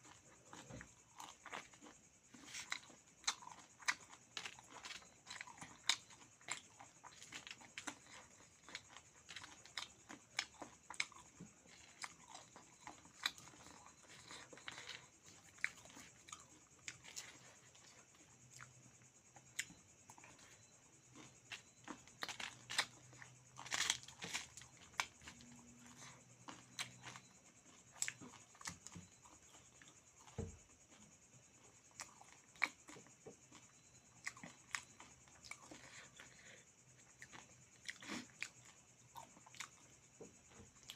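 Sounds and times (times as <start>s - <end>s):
person chewing crunchy food: 0.0s - 40.9s.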